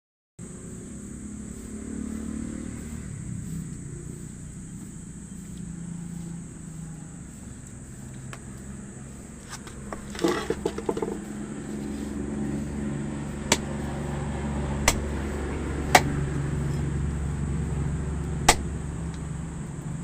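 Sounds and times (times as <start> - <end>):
low engine-like hum: 0.4 - 20.0
sharp knocks: 9.8 - 11.3, 13.5 - 13.7, 14.8 - 15.1, 18.5 - 18.7.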